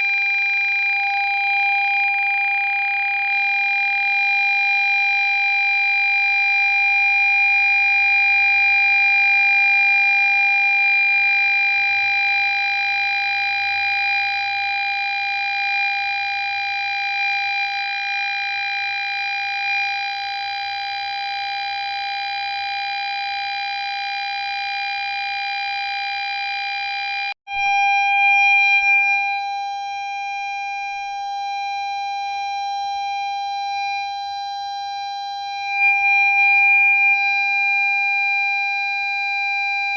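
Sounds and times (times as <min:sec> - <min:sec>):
parking sensor warning tone: 0:22.9 - 0:39.9.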